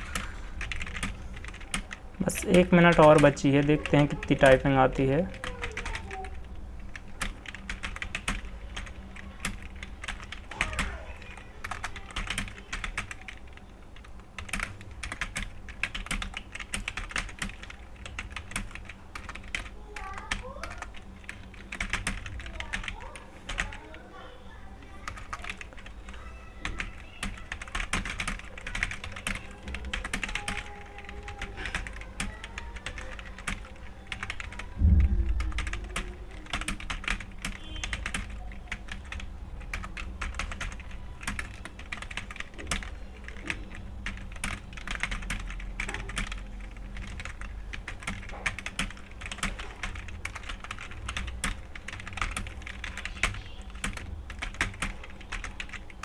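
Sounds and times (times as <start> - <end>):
rapid keyboard typing: 0.0 - 24.2, 24.8 - 34.8, 35.4 - 56.0
dull thump: 34.8 - 35.6.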